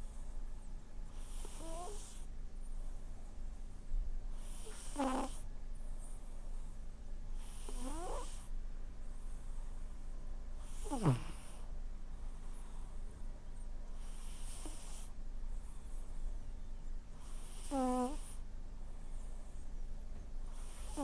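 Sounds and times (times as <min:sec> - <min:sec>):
cat snoring: 0:01.1 - 0:02.3, 0:04.4 - 0:05.5, 0:07.4 - 0:08.5, 0:10.6 - 0:11.7, 0:14.0 - 0:15.1, 0:17.2 - 0:18.4, 0:20.5 - 0:21.0.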